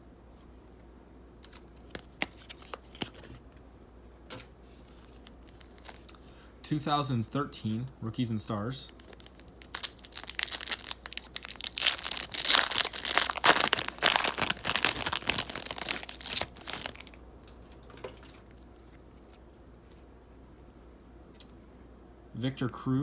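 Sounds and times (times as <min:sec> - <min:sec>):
plastic wrapper tearing and crinkling: 0:05.0 - 0:06.2, 0:08.9 - 0:17.2.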